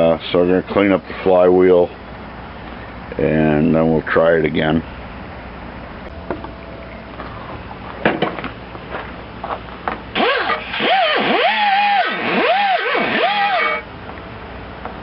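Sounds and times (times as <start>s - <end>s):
die grinder whining: 10.2s - 13.9s.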